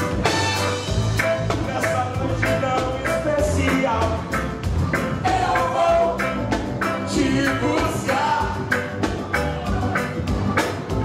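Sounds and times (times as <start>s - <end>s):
gospel band playing: 0.0s - 11.0s
steady drum beat: 0.0s - 11.0s
people singing: 5.2s - 8.7s.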